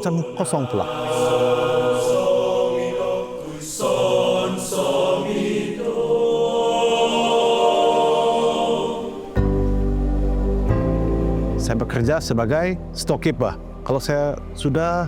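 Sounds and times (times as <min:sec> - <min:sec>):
choir singing a cappella: 0:00.0 - 0:12.0.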